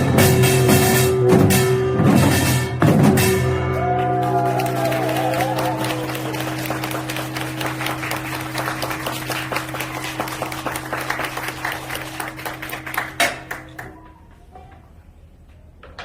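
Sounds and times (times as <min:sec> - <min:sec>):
audience applauding: 0:03.8 - 0:14.0.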